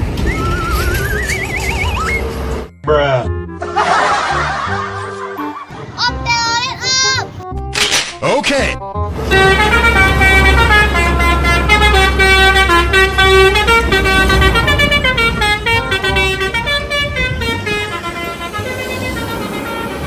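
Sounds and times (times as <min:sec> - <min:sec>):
bus engine rumble: 0:00.0 - 0:02.7, 0:09.0 - 0:20.0
multi-tone musical bus horn: 0:09.1 - 0:20.0.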